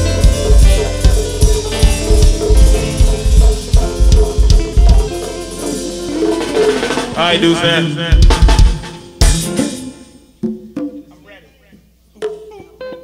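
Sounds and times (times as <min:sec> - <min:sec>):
deep bass: 0:00.0 - 0:05.4
hip-hop beat: 0:00.0 - 0:09.8.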